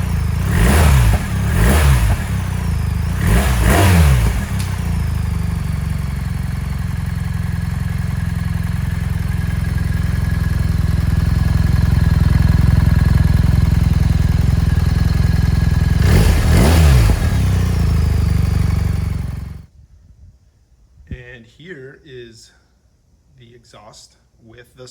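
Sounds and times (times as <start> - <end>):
motorcycle engine idling: 0.0 - 19.7.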